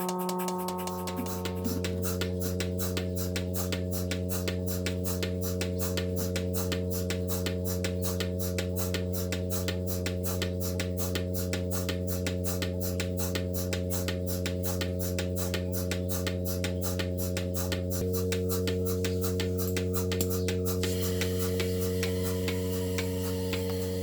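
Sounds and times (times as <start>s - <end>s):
milking machine pulsing hum: 0.0s - 24.0s.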